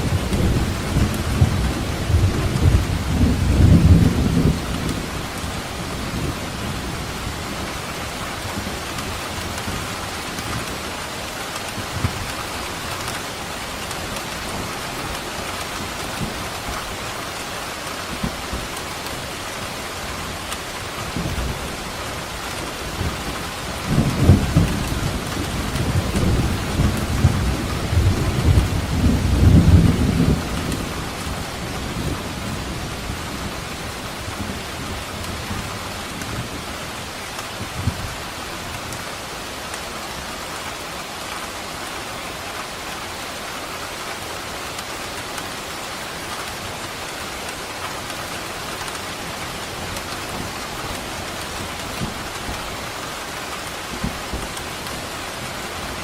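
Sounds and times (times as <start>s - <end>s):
thunder rumbling: 0.0s - 7.5s, 21.0s - 36.6s
heavy rain: 0.0s - 56.0s.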